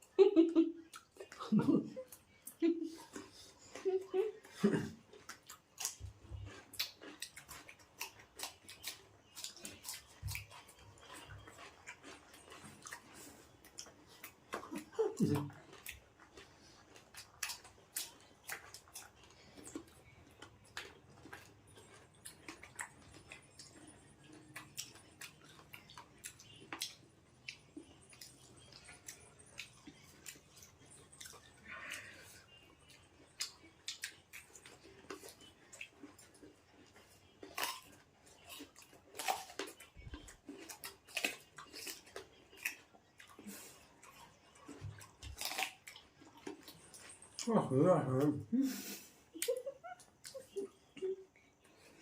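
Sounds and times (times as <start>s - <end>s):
chewing and crunching fruit: 0.0s - 52.0s.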